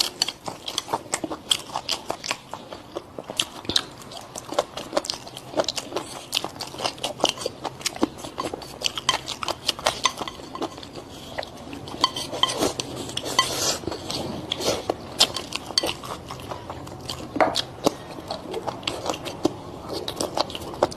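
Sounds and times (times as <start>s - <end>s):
chewing: 0.0s - 20.9s
utensils clinking against dishes: 8.2s - 16.5s.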